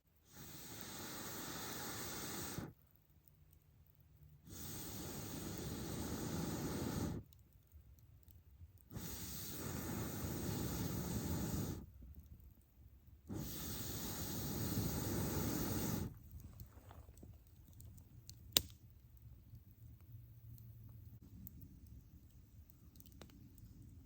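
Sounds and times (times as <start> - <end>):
air blown into campfire: 0.2 - 2.8, 4.4 - 7.4, 8.9 - 12.2, 13.2 - 17.5.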